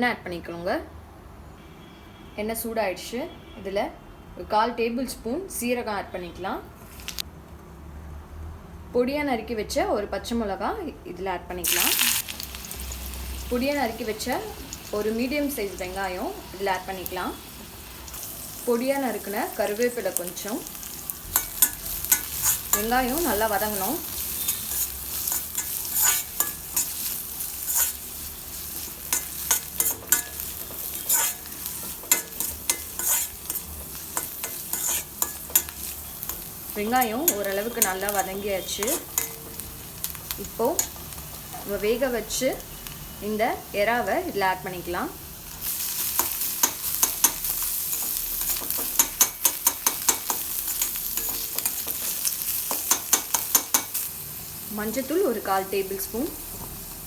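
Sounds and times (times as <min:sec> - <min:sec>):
onions sizzling in hot oil: 0:11.5 - 0:57.0
spoon scraping a pan: 0:19.6 - 0:41.7, 0:45.6 - 0:54.1.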